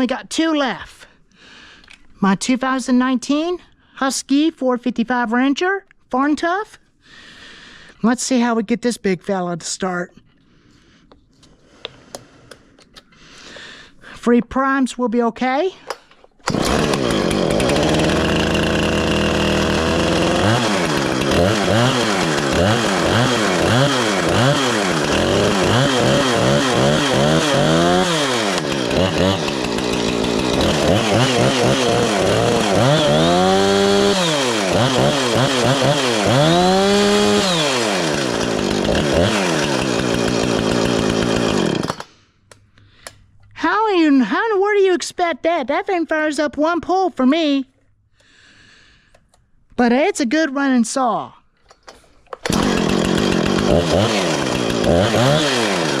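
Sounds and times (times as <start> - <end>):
chainsaw idling and revving: 16.5 - 42.1, 52.4 - 56.0.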